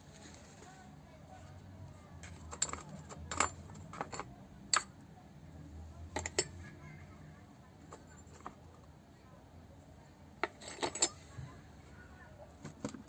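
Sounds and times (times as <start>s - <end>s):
metal clinks and taps: 2.2s - 4.9s, 6.2s - 6.6s.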